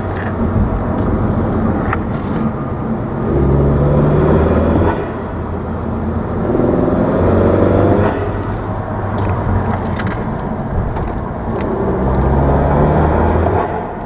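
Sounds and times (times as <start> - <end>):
car engine revving: 0.0 - 14.0.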